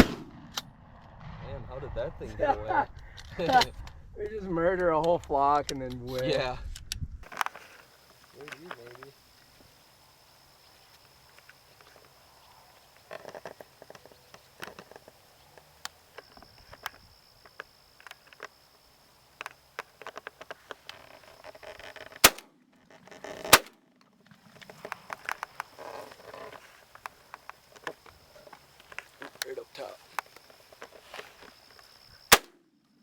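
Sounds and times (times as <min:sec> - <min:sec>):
shotgun blasts: 0:00.0 - 0:02.0, 0:22.2 - 0:22.5, 0:32.3 - 0:32.6
light clicks and rustling: 0:07.2 - 0:09.5.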